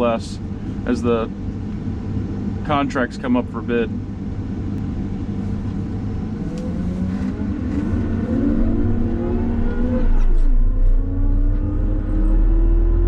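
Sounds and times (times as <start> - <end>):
low rumble: 3.9 - 13.0
wheel loader diesel engine accelerating: 5.2 - 13.0.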